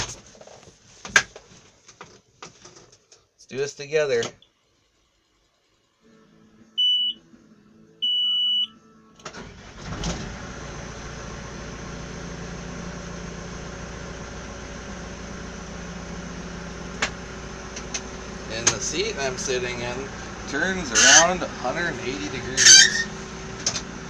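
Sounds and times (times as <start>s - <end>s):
warning beeps: 6.8s - 7.2s, 8.0s - 8.8s
backhoe engine starting and idling: 9.2s - 24.0s
low hum: 9.8s - 24.0s.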